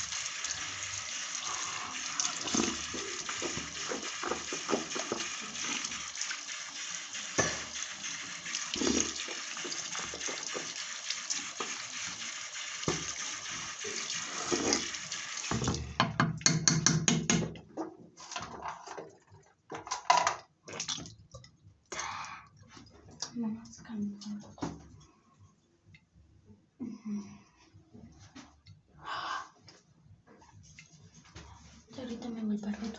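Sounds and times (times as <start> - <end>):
water running from a tap: 0.0 - 16.9.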